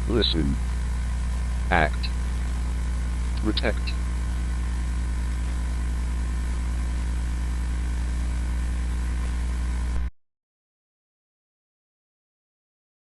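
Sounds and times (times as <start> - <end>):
low buzzing hum: 0.0 - 10.1
static hiss: 0.0 - 10.1.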